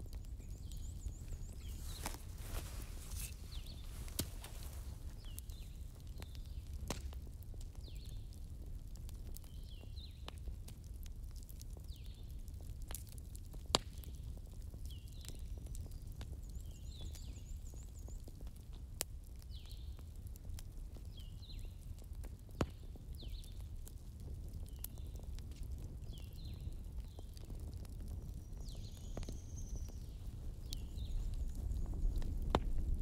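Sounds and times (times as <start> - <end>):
birds chirping: 0.0 - 6.7
wood fire crackling and popping: 0.0 - 33.0.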